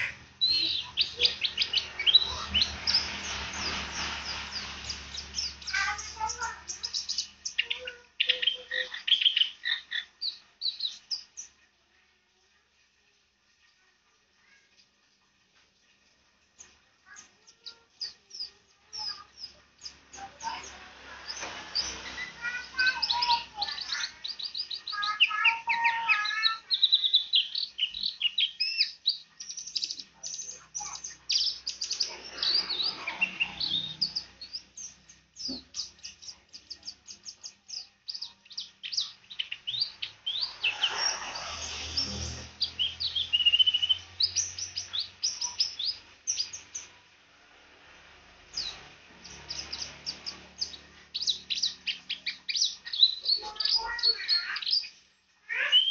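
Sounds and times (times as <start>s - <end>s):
bird twittering chirps and trills: 0.0s - 11.8s, 15.8s - 55.9s.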